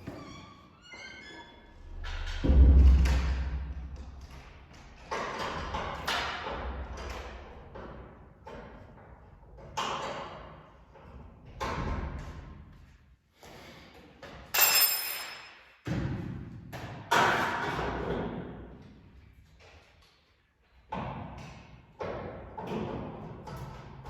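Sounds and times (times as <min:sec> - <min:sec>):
echoing knocks and clanks: 0:01.8 - 0:12.7, 0:20.8 - 0:24.0.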